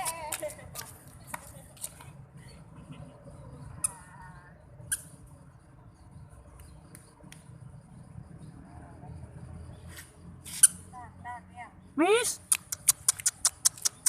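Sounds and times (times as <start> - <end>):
sharp clicks and taps: 12.4 - 14.0.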